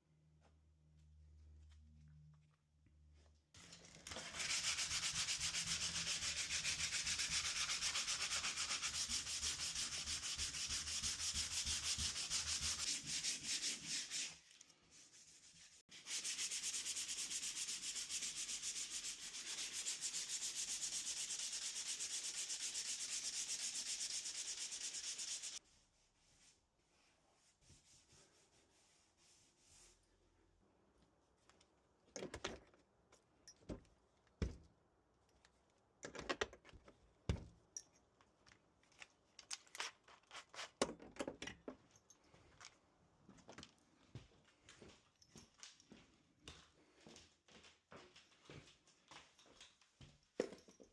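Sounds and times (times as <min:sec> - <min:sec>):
sandpaper rubbing: 0:04.0 - 0:25.6.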